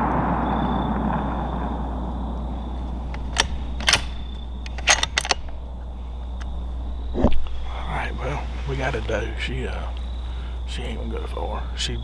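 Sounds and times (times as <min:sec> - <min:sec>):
rifle shot echoing: 0:01.1 - 0:07.1
rifle mechanism clicks: 0:02.6 - 0:06.8.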